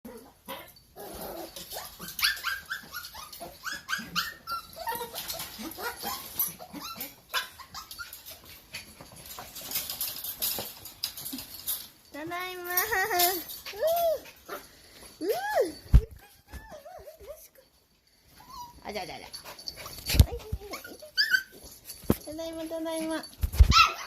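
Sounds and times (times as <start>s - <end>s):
puppy whining and yelping: 0.1s - 10.2s, 13.0s - 17.4s, 18.2s - 22.2s, 23.5s - 24.0s.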